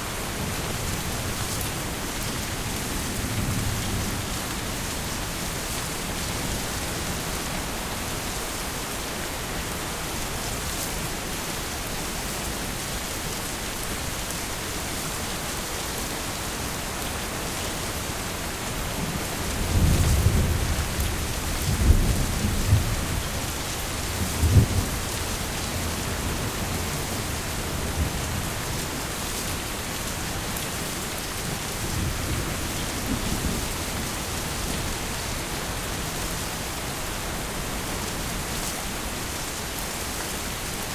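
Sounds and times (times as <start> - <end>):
heavy rain falling: 0.0 - 40.9
thunder rumbling: 19.0 - 38.4.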